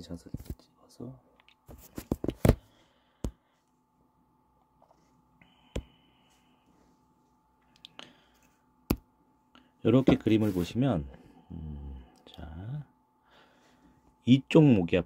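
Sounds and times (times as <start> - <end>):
faint high steady tone: 2.9 - 15.0.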